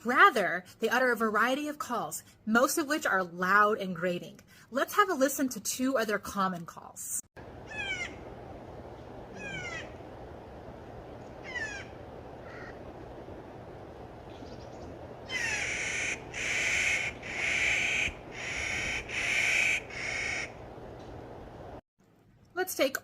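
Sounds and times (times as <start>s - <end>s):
bird calls falling notes: 7.5s - 10.2s, 14.2s - 21.2s
harsh grating bird calls: 7.6s - 8.3s, 9.3s - 10.1s, 11.2s - 12.9s, 14.4s - 20.6s.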